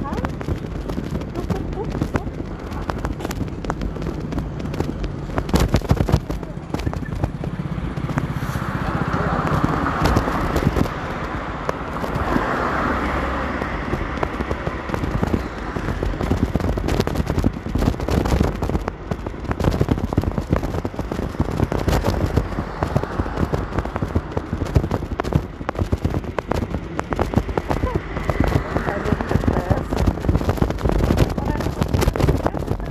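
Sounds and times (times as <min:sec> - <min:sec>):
traffic swishing past: 0:00.0 - 0:32.9.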